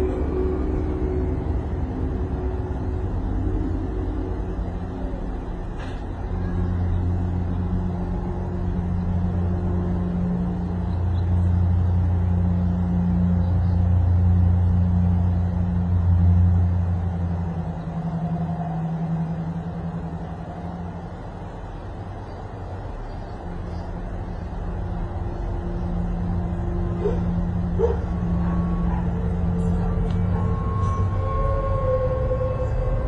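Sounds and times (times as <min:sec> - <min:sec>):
vehicle engine rumbling: 0:00.0 - 0:33.0.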